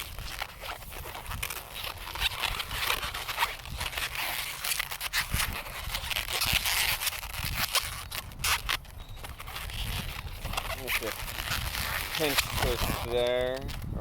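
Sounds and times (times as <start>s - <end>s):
balloon squeaking and rubbing: 0.0s - 14.0s
rubber balloon creaks and pops: 0.0s - 14.0s.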